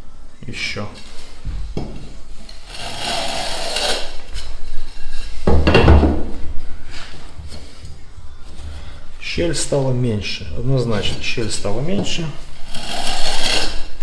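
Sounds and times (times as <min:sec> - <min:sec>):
stone tile scraping on concrete: 0:02.6 - 0:04.2, 0:12.6 - 0:14.0.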